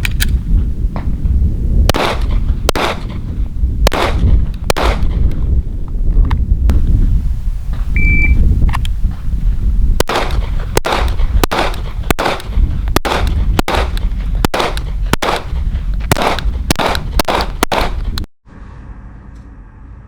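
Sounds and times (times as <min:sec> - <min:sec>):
wind rumble on microphone: 0:00.0 - 0:20.0
pistol shots: 0:01.9 - 0:05.3, 0:10.0 - 0:18.2
shot timer beep: 0:08.0 - 0:08.4.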